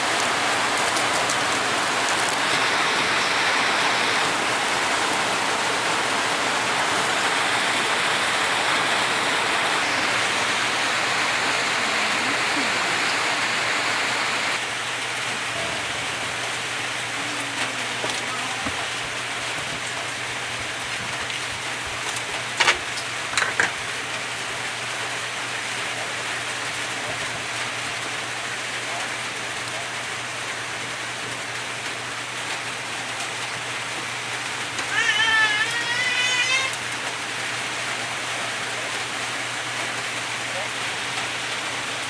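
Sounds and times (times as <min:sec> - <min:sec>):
food sizzling in a hot pan: 0:00.0 - 0:16.0.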